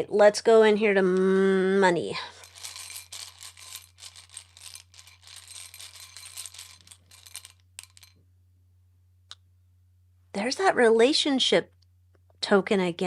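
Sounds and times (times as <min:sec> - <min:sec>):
tokens rattling and clinking: 0:02.2 - 0:08.2.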